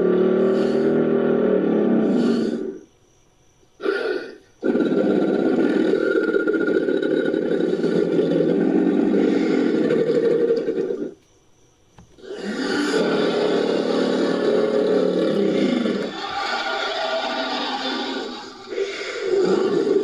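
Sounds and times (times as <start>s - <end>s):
crocodile screaming: 0.0s - 2.8s, 3.8s - 11.2s, 12.2s - 20.0s.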